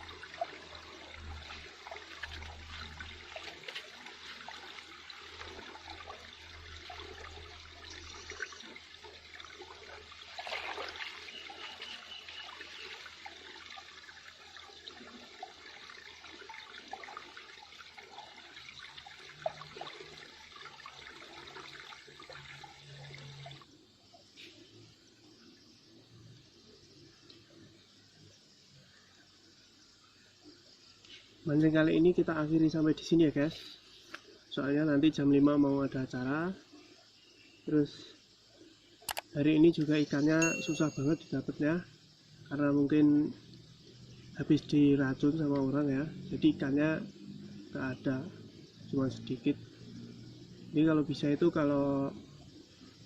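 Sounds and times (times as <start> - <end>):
river water gurgling: 0.0 - 26.0, 29.3 - 53.0.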